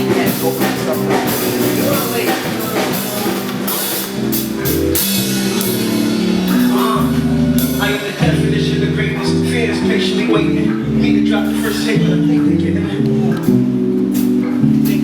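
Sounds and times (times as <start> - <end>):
drum kit with cymbals: 0.0 - 9.2, 13.4 - 15.0
deep bass notes: 0.0 - 15.0
guitar chords: 0.0 - 15.0.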